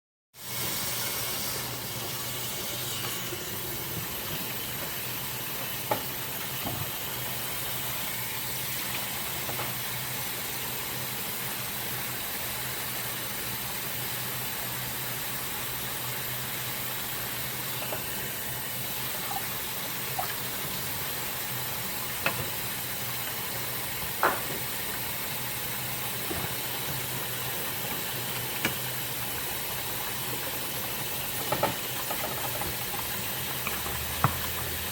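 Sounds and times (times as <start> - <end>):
tap water running into sink: 2.0 - 8.1, 17.0 - 34.9.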